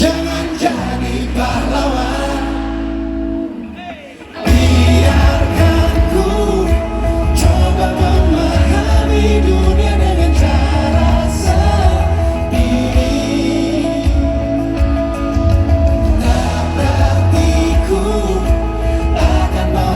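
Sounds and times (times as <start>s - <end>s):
heavy bass: 0.0s - 3.8s, 4.4s - 19.9s
live band playing: 0.0s - 19.9s
person singing: 3.7s - 15.3s, 16.0s - 19.9s.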